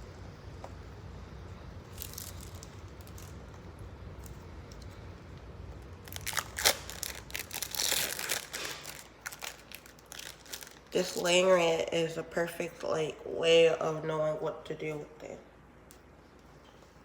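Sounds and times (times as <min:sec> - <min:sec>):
crinkling and tearing by hand: 0:01.9 - 0:05.0, 0:05.8 - 0:11.2.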